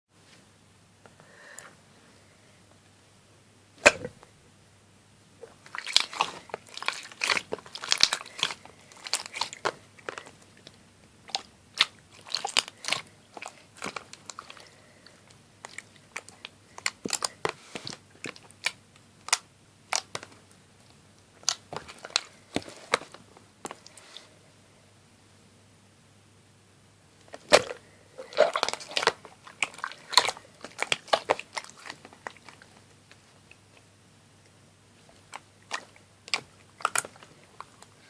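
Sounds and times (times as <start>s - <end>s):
slime air bubbles popping: 3.8s - 4.2s.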